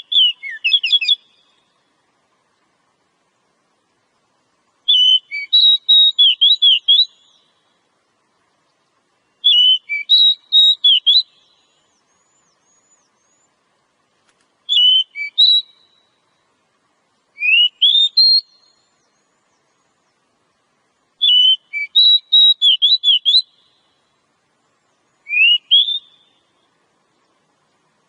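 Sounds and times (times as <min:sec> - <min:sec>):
bird singing whistled notes: 0:00.0 - 0:01.9, 0:04.8 - 0:07.8, 0:09.1 - 0:13.6, 0:14.6 - 0:16.5, 0:17.3 - 0:20.2, 0:21.0 - 0:24.2, 0:24.8 - 0:26.8.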